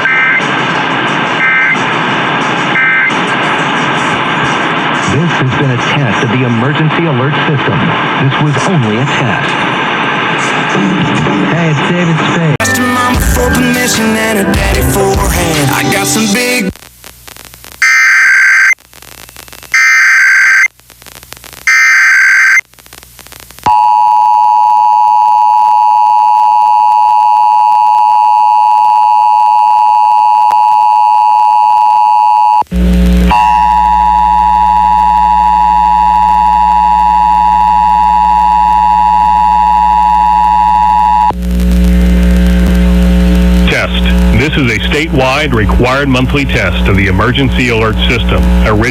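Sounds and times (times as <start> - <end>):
loud low hum: 32.7 - 48.9.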